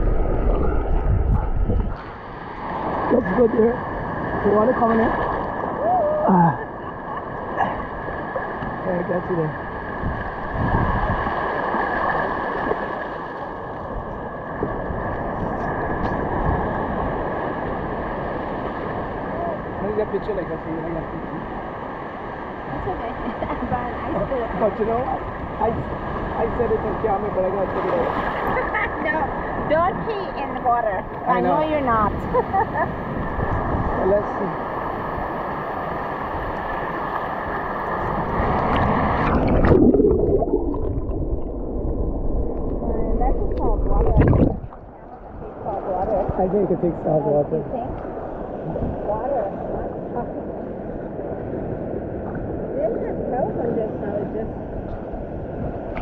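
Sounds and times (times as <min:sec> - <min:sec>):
wind rumbling on microphone: 0:00.0 - 0:47.0, 0:47.6 - 0:56.0
ocean surf washing: 0:00.0 - 0:56.0
water splash: 0:37.6 - 0:45.0.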